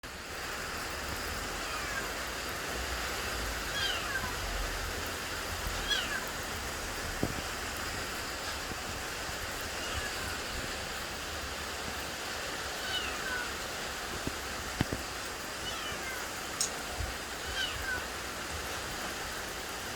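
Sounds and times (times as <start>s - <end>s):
steady hiss: 0.1s - 19.9s
animal's short high calls: 3.7s - 4.4s, 5.8s - 6.3s, 17.4s - 18.1s.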